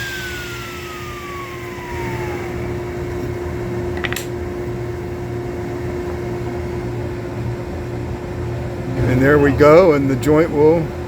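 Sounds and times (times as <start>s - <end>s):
power tool motor winding down: 0.0s - 3.6s
steady machine hum: 0.0s - 10.0s.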